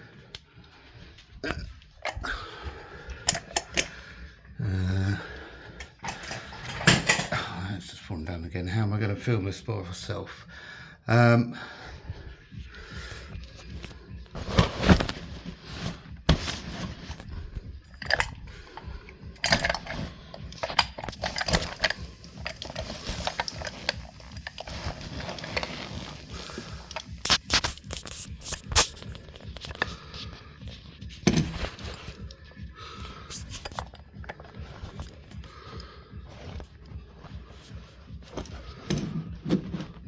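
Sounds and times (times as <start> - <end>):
handling knocks clicks and scrapes: 3.0 - 4.2, 5.8 - 7.5, 12.6 - 40.0.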